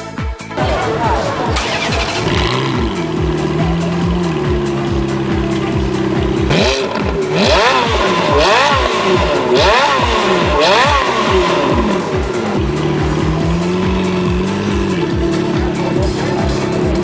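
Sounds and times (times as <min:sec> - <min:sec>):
car engine revving: 0:00.6 - 0:17.0.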